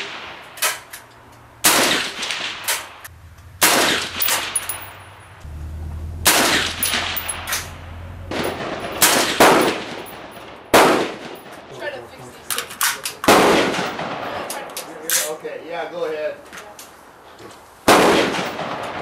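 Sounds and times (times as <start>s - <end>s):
rifle shots with echo: 1.6s - 3.0s, 3.6s - 4.9s, 6.3s - 7.7s, 8.3s - 11.7s, 13.2s - 14.7s, 17.9s - 19.0s.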